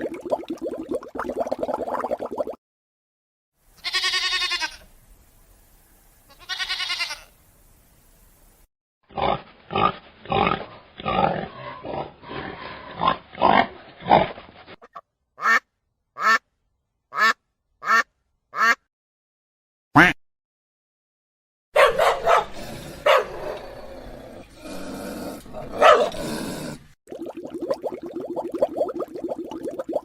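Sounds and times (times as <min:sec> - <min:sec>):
animal bleating: 0:03.8 - 0:04.9, 0:06.3 - 0:07.3
short falling barks: 0:21.8 - 0:23.6, 0:25.7 - 0:26.2.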